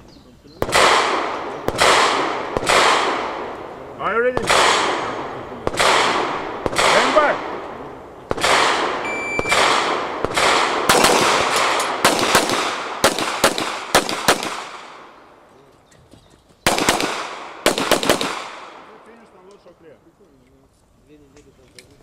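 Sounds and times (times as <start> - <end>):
handgun shots echoing: 0.6 - 3.6, 4.4 - 7.6, 8.3 - 15.2, 16.7 - 19.0
shot timer beep: 9.0 - 9.6.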